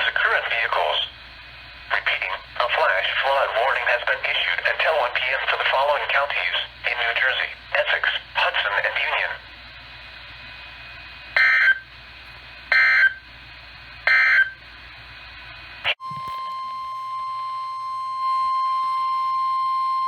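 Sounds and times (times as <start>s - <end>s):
steady warning alarm tone: 11.4s - 11.9s, 12.7s - 13.2s, 14.0s - 14.6s, 15.9s - 20.0s.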